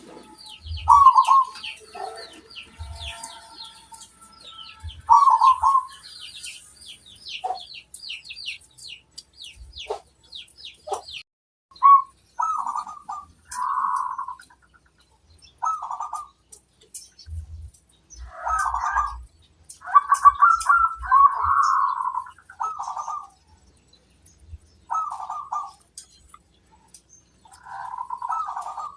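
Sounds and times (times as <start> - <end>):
dove cooing: 0.0 - 4.0, 4.8 - 6.1, 11.8 - 14.5, 15.6 - 16.4, 18.2 - 19.2, 19.8 - 23.4, 24.9 - 25.8, 27.5 - 28.9
small birds chirping: 0.0 - 28.9.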